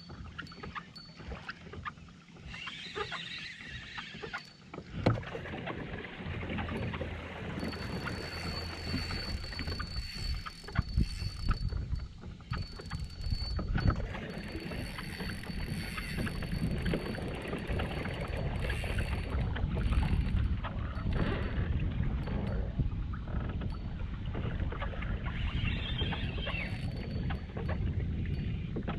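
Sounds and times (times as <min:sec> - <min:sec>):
water sloshing against hull: 0:00.0 - 0:28.9
knocks on boat: 0:04.9 - 0:05.3.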